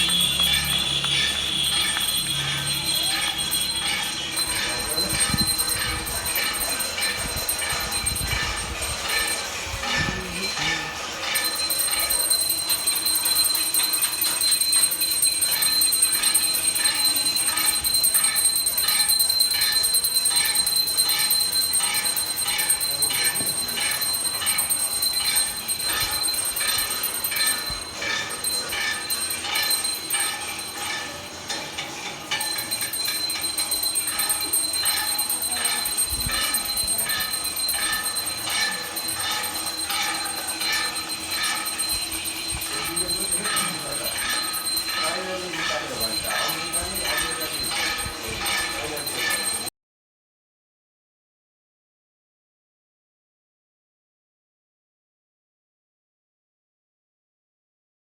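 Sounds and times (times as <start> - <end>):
metal plates and utensils banged: 0.0 - 12.2
bells ringing: 0.0 - 49.7
high ringing tone: 0.0 - 49.7.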